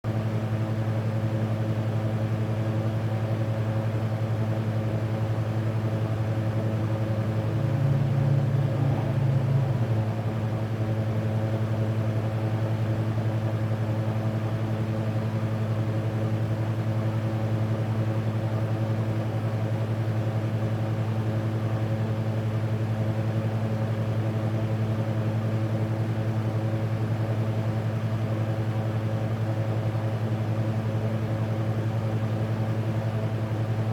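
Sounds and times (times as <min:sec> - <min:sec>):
low electrical hum: 0:04.9 - 0:12.4
higher hum tone: 0:06.6 - 0:11.7.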